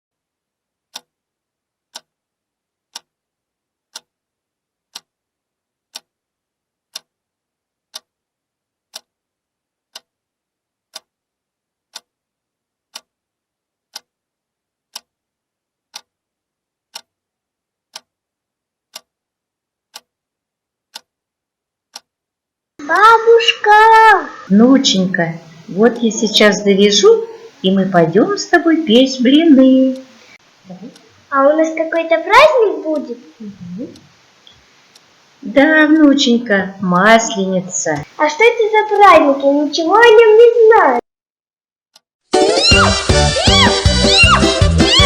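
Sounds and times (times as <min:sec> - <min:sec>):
clock ticking: 0:00.9 - 0:01.1, 0:01.9 - 0:02.2, 0:02.9 - 0:03.2, 0:03.9 - 0:04.2, 0:04.9 - 0:05.2, 0:05.9 - 0:06.1, 0:06.9 - 0:07.2, 0:07.9 - 0:08.2, 0:08.9 - 0:09.1, 0:09.9 - 0:10.2, 0:10.9 - 0:11.2, 0:11.9 - 0:12.2, 0:12.9 - 0:13.1, 0:13.9 - 0:14.1, 0:14.9 - 0:15.1, 0:15.9 - 0:16.1, 0:16.9 - 0:17.1, 0:17.9 - 0:18.2, 0:18.9 - 0:19.2, 0:19.9 - 0:20.1, 0:20.9 - 0:21.2, 0:21.9 - 0:22.1, 0:22.8 - 0:41.0.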